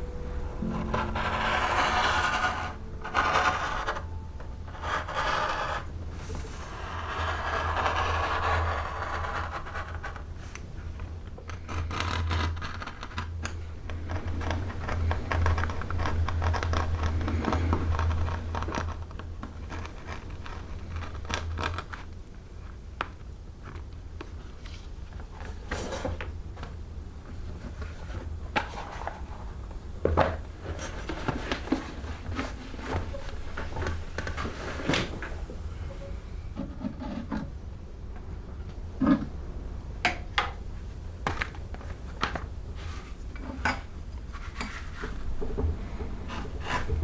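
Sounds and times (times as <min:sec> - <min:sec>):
low hum: 0:00.0 - 0:10.0
scraping and rustling: 0:00.0 - 0:37.7, 0:38.4 - 0:47.0.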